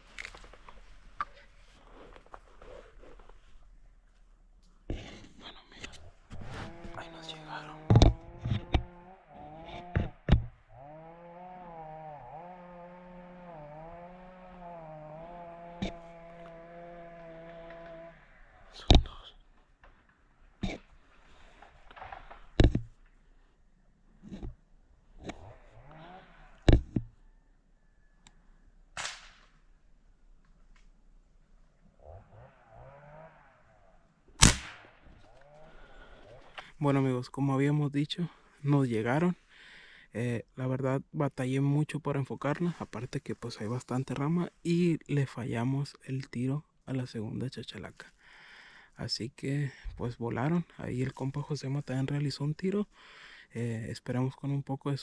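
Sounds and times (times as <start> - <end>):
small engine running: 6.4 - 18.8, 25.2 - 27.1, 32.0 - 33.8
air rifle shot: 29.0 - 29.5, 34.4 - 35.0.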